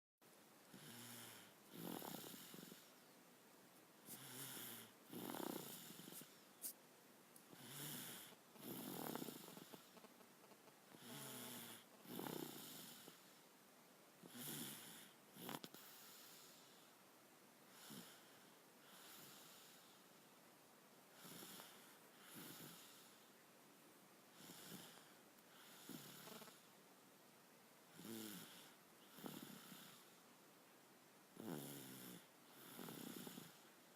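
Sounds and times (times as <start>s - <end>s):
person snoring: 0.7s - 2.9s, 4.1s - 6.3s, 7.6s - 9.9s, 11.0s - 13.2s, 24.4s - 26.6s.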